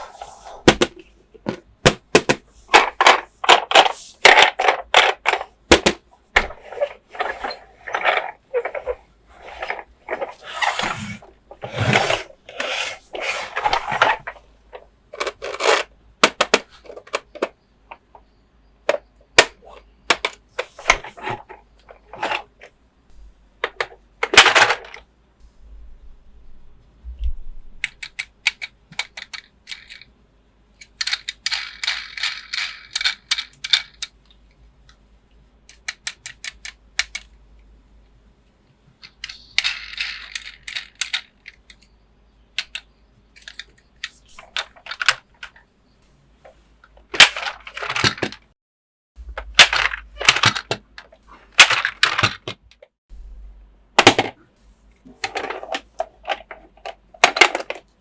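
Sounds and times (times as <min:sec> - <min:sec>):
sharp plastic knocks: 0:00.6 - 0:06.5
plastic toy pieces clicking: 0:27.8 - 0:30.1, 0:30.8 - 0:34.3, 0:35.7 - 0:37.4, 0:39.0 - 0:41.9, 0:42.6 - 0:45.6, 0:55.3 - 0:57.9.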